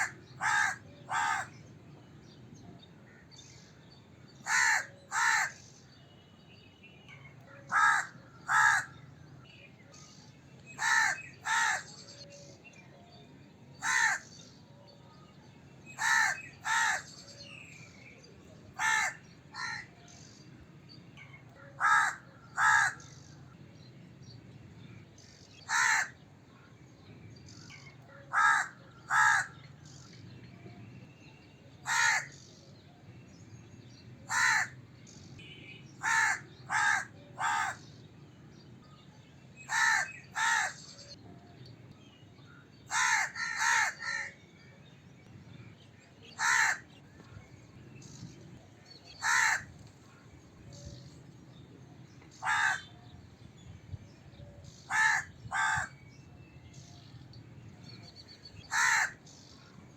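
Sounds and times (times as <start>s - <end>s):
crow cawing: 0.0s - 1.5s, 4.4s - 5.6s, 7.7s - 9.0s, 10.8s - 11.9s, 13.8s - 14.2s, 16.0s - 17.1s, 18.8s - 19.9s, 21.8s - 23.1s, 25.7s - 26.2s, 28.3s - 29.6s, 31.9s - 32.3s, 34.3s - 34.8s, 36.0s - 37.8s, 39.7s - 40.8s, 42.9s - 44.3s, 46.4s - 46.8s, 49.2s - 49.7s, 52.4s - 52.9s, 54.9s - 55.9s, 58.7s - 59.2s.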